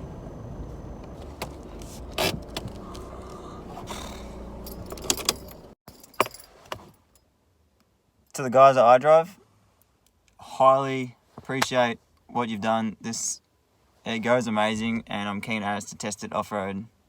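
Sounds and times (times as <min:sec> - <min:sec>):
engine running at low speed: 0:00.0 - 0:05.8.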